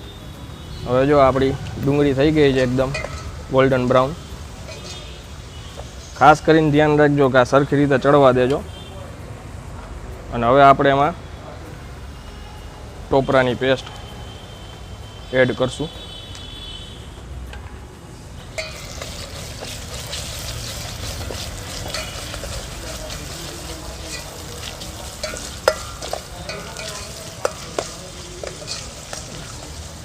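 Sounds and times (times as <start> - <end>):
paste sizzling in oil: 1.4 - 6.7, 18.1 - 30.0
spoon scraping a pan: 2.9 - 3.5, 4.6 - 6.0, 18.5 - 30.0.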